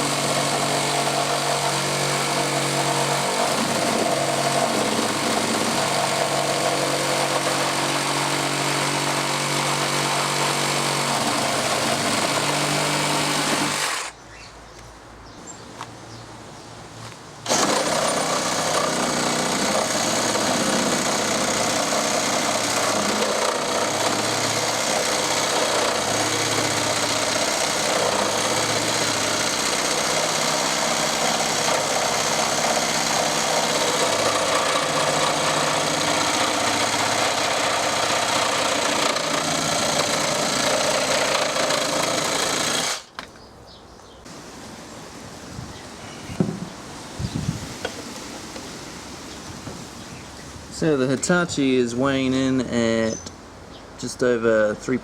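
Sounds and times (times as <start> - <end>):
reciprocating saw cutting timber: 0.0 - 14.2, 17.4 - 43.1.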